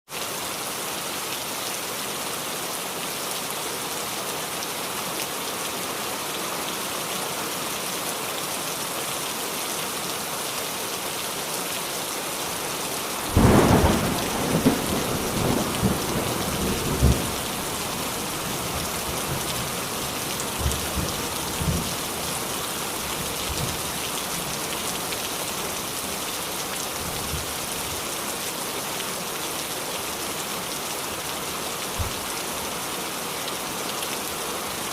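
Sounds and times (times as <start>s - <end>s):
heavy rain falling: 0.2s - 34.9s
thunder clap and rumble: 13.3s - 17.5s.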